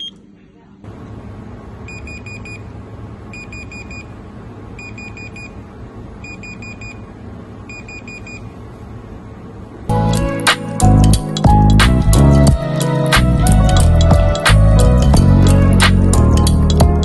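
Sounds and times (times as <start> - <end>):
thermometer alarm beeping: 0.0 - 0.2, 1.9 - 2.7, 3.3 - 4.1, 4.8 - 5.6, 6.2 - 7.1, 7.7 - 8.5.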